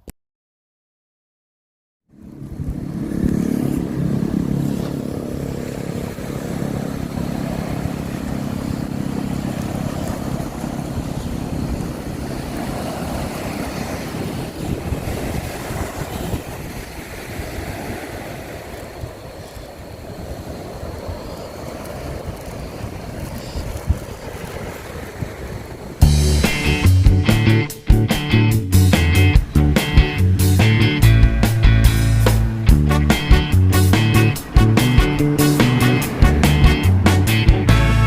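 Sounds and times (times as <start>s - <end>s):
engine running: 2.1s - 14.6s, 26.0s - 38.0s
constant rushing noise: 2.1s - 38.0s.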